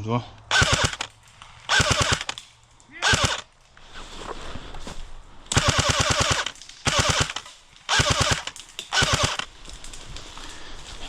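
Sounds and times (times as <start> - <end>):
airsoft gun full-auto bursts: 0.5 - 2.4, 3.0 - 3.5, 5.5 - 9.5.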